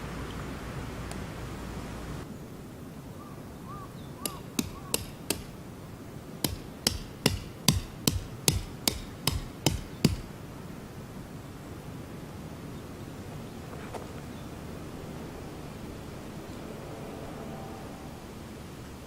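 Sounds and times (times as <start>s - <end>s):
hammer striking tent peg: 4.2s - 5.6s, 6.4s - 10.3s.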